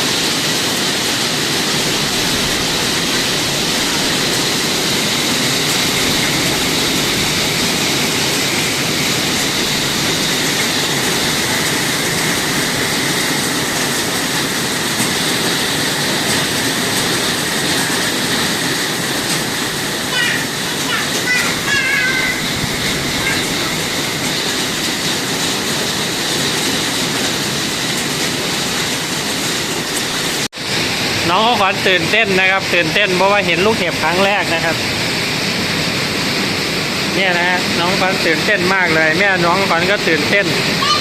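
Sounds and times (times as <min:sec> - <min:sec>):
heavy rain and hail: 0:00.0 - 0:41.0.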